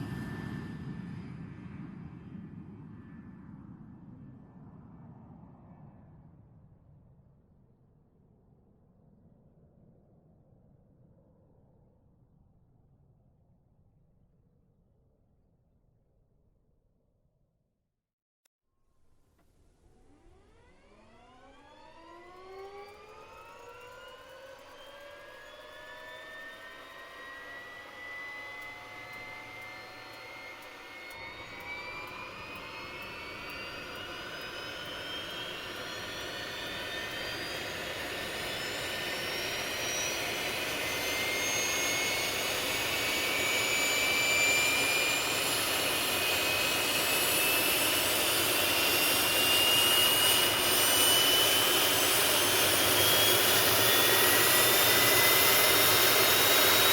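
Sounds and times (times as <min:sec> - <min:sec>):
jet engine spooling up: 0:00.0 - 0:02.9, 0:19.6 - 0:56.9.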